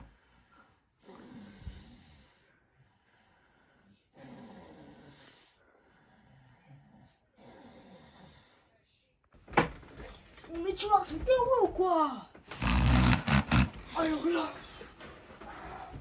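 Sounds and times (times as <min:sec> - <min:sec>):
person snoring: 0:12.5 - 0:14.5.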